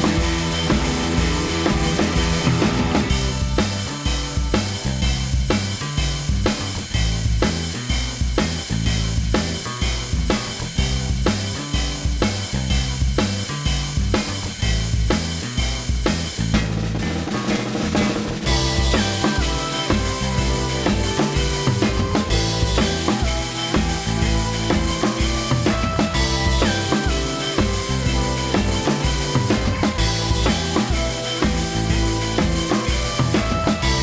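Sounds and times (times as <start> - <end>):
bass line: 0.0 - 34.0
drum kit beat: 0.0 - 34.0.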